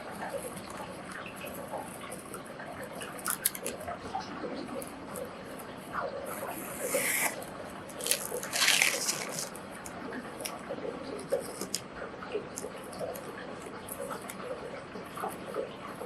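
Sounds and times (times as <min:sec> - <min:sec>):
scissors snipping paper: 0:00.2 - 0:03.8, 0:06.3 - 0:10.6, 0:11.2 - 0:11.8, 0:12.4 - 0:14.4
paper rustling: 0:06.0 - 0:11.8.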